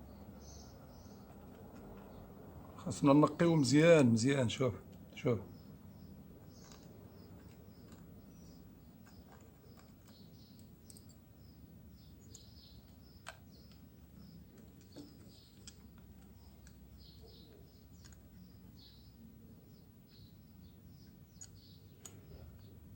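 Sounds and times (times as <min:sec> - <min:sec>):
small birds chirping: 0:00.0 - 0:22.9.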